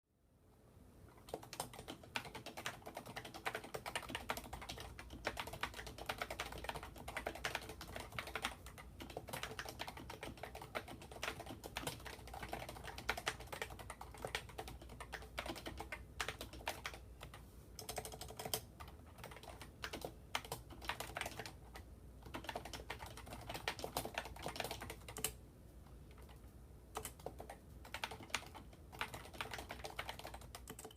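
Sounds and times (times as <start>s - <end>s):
keyboard typing: 1.1s - 25.4s, 26.1s - 30.9s.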